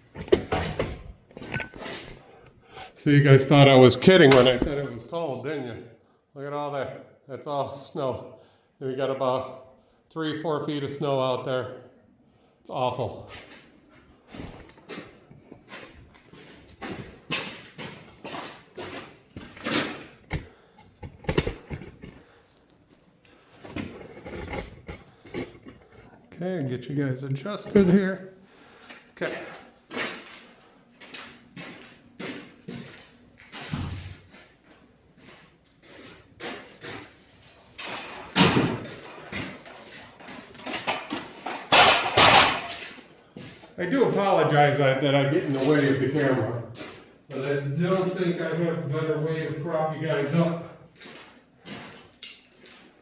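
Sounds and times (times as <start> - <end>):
knocks and bumps of handling: 0.0 - 1.6, 16.8 - 22.4, 37.8 - 43.1.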